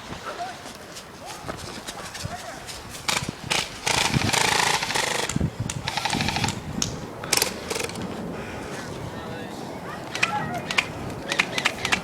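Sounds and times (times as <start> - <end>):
airsoft guns firing full auto: 3.1 - 6.6, 7.2 - 8.1, 10.1 - 12.0.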